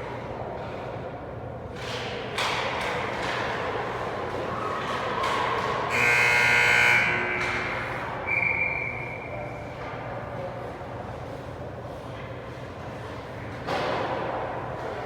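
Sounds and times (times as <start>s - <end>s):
large hall background noise: 0.0s - 15.0s
game buzzer: 5.9s - 7.7s.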